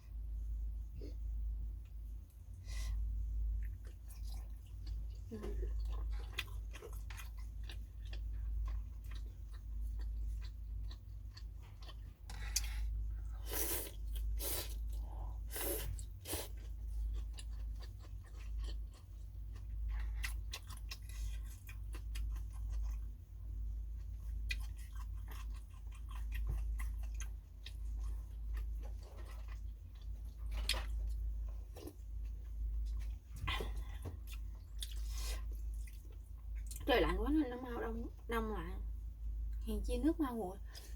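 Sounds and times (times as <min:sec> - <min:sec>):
steady low hum: 0:00.0 - 0:40.9
louder eating noises: 0:03.6 - 0:23.3, 0:23.9 - 0:36.9
chewing with mouth clicks: 0:03.6 - 0:36.9.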